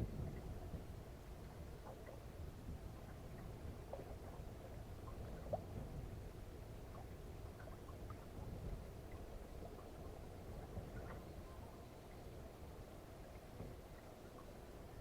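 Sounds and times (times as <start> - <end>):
low rumble: 0.0 - 2.0
water lapping against hull: 0.0 - 15.0.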